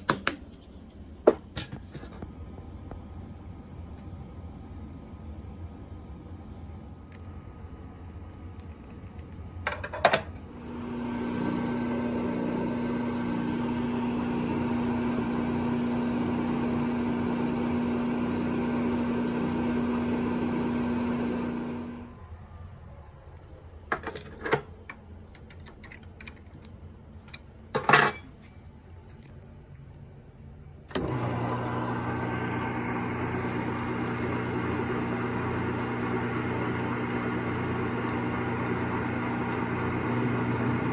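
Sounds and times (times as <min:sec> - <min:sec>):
lathe motor humming: 0:10.5 - 0:22.2, 0:30.9 - 0:40.9.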